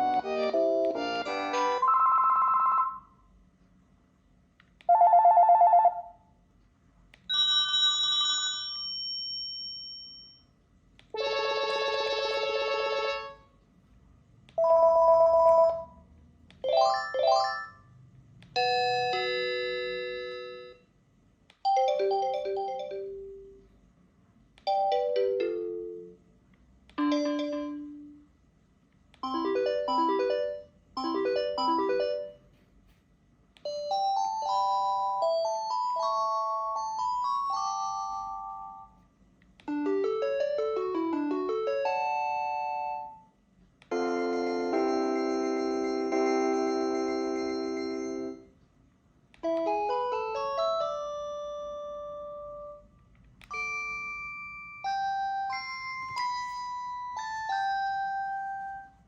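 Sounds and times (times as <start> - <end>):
phone electronic ringtones: 1.4 - 3.1.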